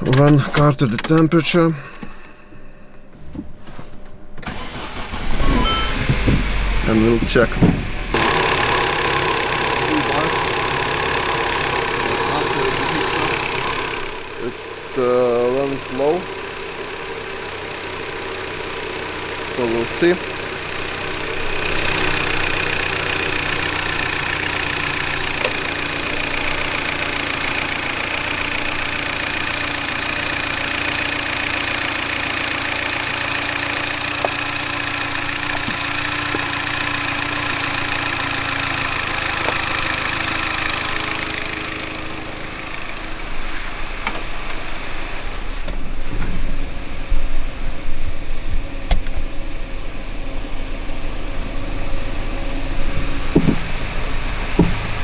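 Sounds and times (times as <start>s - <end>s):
car engine idling: 0.0s - 3.1s, 4.2s - 55.0s
uneven low engine rumble: 0.0s - 55.0s
scattered knocks: 53.3s - 53.9s, 54.6s - 55.0s.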